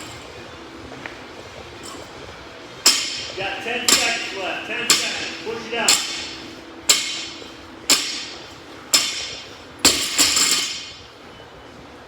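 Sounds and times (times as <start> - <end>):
barbell clanking on floor: 2.9 - 11.0.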